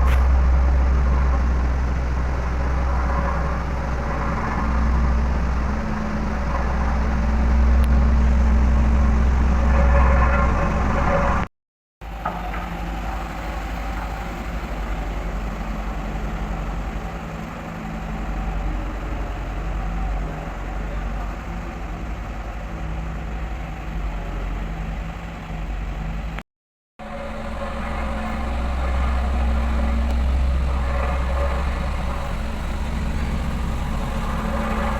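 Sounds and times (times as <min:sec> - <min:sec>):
road roller diesel engine rumble: 0:00.0 - 0:11.4, 0:12.0 - 0:26.4, 0:27.0 - 0:34.9.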